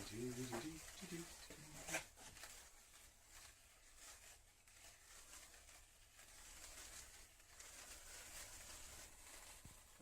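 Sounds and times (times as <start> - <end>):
sparkler fizzing: 0.0 - 10.0.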